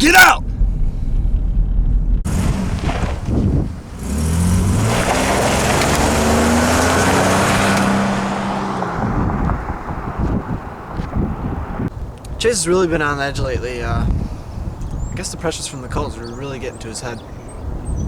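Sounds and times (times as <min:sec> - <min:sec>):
car engine accelerating: 0:01.2 - 0:11.9.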